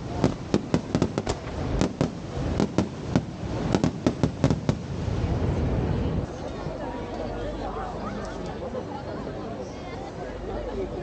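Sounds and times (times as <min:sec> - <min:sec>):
fireworks bangs: 0:00.0 - 0:05.5.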